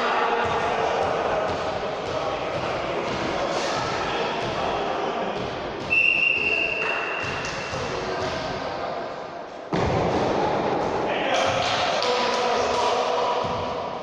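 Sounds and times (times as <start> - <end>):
echoing sports hall din: 0.0 - 14.0
referee's whistle blowing: 5.9 - 7.4.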